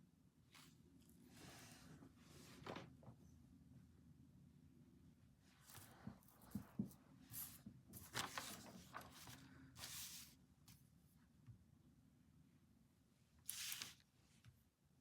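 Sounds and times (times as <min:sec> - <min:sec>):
low room hum: 0:00.0 - 0:15.0
paper rustling: 0:05.6 - 0:10.8, 0:13.5 - 0:14.1.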